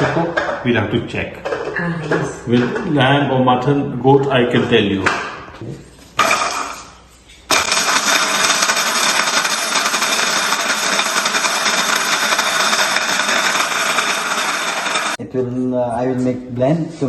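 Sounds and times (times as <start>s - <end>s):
spice grinder motor: 7.5s - 15.2s.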